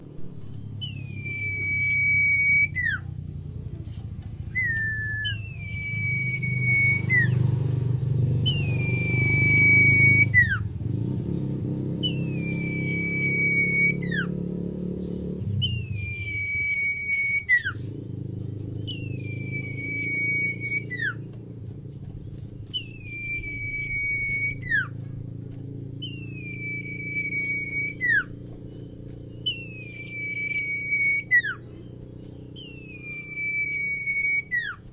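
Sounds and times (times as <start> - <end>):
bird whistling: 0.0 - 10.9, 11.8 - 34.9
low hum: 0.0 - 34.9.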